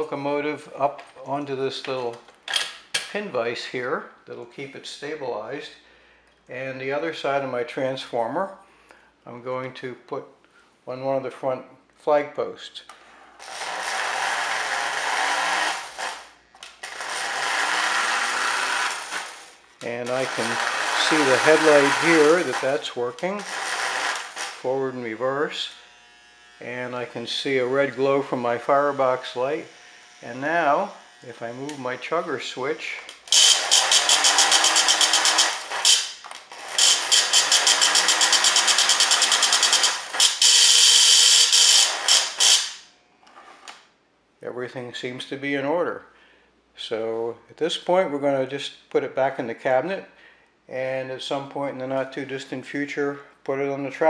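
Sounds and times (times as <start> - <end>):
toy train motor whirring: 13.4 - 19.6, 20.4 - 22.5, 23.4 - 24.6, 33.2 - 42.8.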